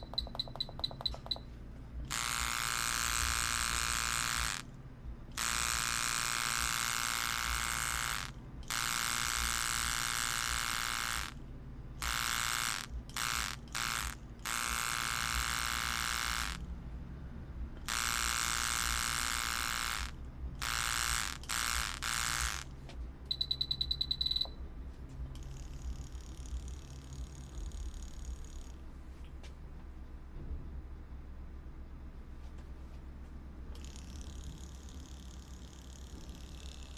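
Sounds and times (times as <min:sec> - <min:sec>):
tattoo machine buzzing: 0:00.0 - 0:01.4, 0:02.0 - 0:11.4, 0:12.0 - 0:16.7, 0:17.8 - 0:22.7, 0:23.3 - 0:24.5, 0:25.4 - 0:28.8, 0:33.8 - 0:36.9.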